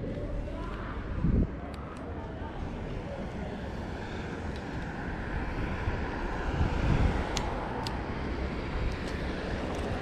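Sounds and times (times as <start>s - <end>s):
wind noise on microphone: 0.0s - 1.7s, 4.0s - 10.0s
traffic rumble: 0.0s - 10.0s.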